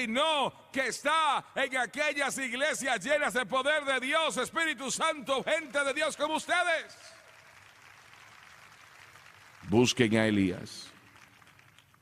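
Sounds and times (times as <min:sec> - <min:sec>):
man's voice echoing: 0:00.0 - 0:07.2, 0:09.6 - 0:11.1.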